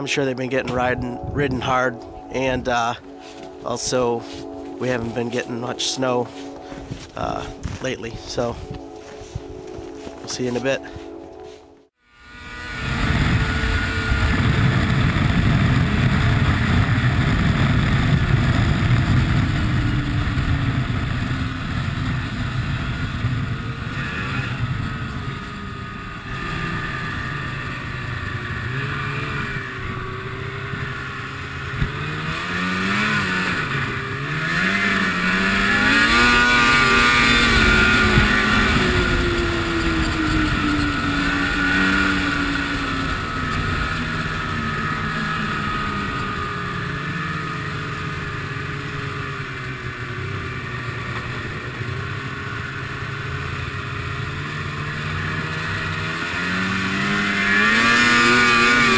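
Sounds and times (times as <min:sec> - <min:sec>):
snowmobile engine revving: 0:12.0 - 0:58.9.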